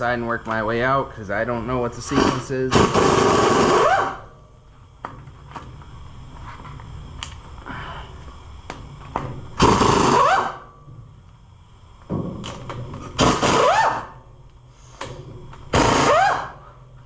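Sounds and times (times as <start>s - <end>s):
impact wrench hammering: 2.2s - 4.2s, 9.2s - 10.6s, 12.1s - 14.1s.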